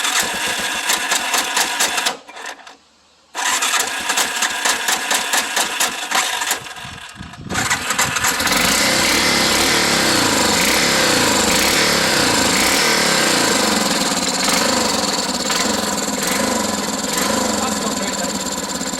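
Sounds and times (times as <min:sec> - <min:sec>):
atv engine running: 0:06.0 - 0:18.9.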